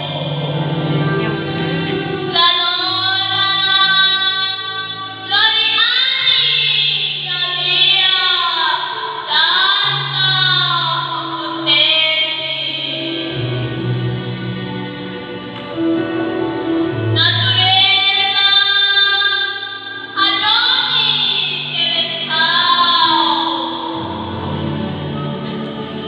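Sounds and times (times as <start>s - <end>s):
woman singing with vibrato: 0.0s - 0.6s, 1.5s - 13.4s, 17.1s - 24.9s
low sustained bass notes: 0.0s - 5.2s, 9.8s - 18.4s, 20.4s - 26.0s.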